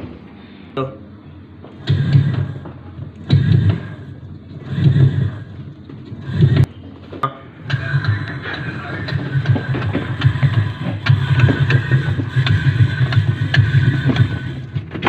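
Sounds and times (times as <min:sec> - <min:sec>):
washing machine humming: 0:00.0 - 0:15.0
washing machine knocking and rattling: 0:01.8 - 0:05.5, 0:07.7 - 0:15.0.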